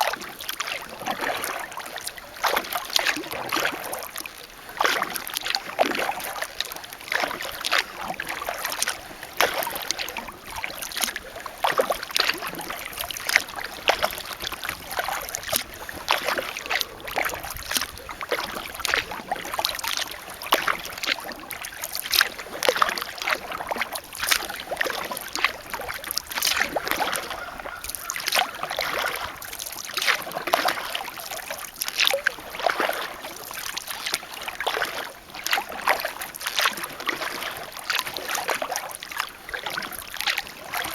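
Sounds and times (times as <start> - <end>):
paddle splashing in water: 0.0 - 40.9
water dripping: 1.4 - 34.0.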